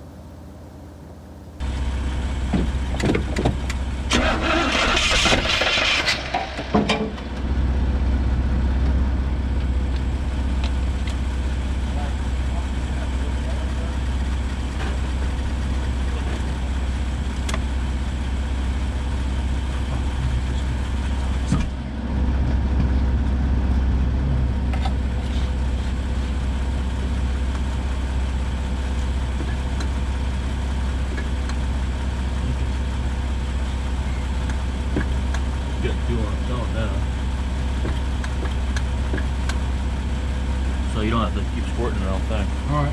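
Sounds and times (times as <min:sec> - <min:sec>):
low engine drone: 0:00.0 - 0:42.9.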